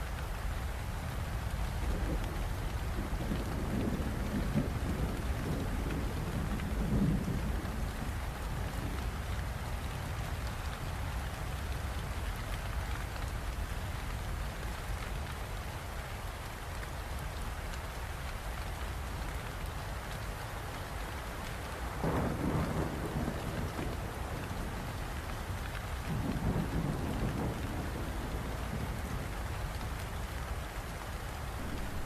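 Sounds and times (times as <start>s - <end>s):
heavy rain: 0.0s - 32.0s
thunder rumbling: 1.8s - 9.0s, 22.0s - 25.0s, 26.0s - 29.9s, 31.5s - 32.0s.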